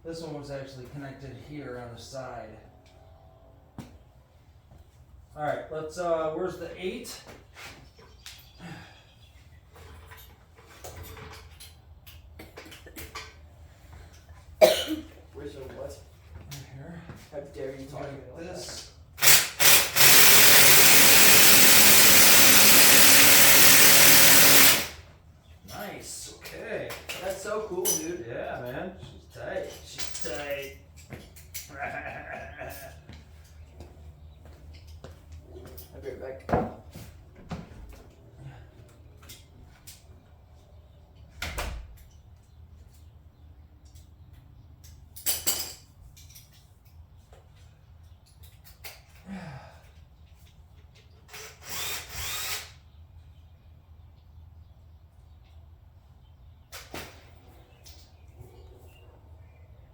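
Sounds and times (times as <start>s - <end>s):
power tool driving bolt: 19.2s - 25.0s, 51.3s - 52.8s.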